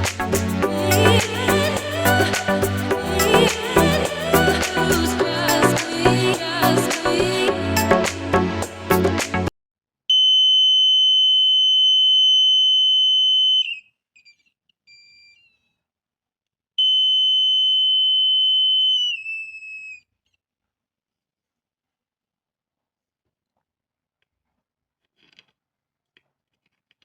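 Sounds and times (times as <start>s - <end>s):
background music: 0.0s - 9.5s.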